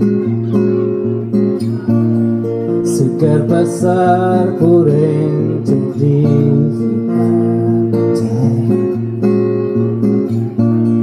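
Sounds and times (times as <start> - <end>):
acoustic guitar strumming chords: 0.0 - 11.0
person singing: 2.8 - 9.2.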